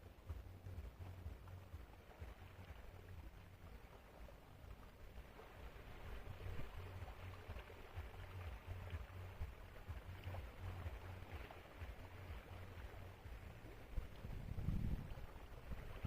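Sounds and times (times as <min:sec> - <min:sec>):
faint hiss of sea water: 0:00.0 - 0:16.0
wind buffeting microphone: 0:05.2 - 0:16.0.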